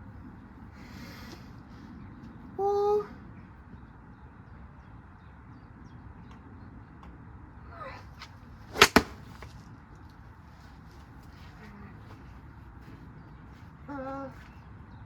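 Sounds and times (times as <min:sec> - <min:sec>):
sharp cracks: 0:08.7 - 0:09.6
short swish: 0:08.8 - 0:09.4.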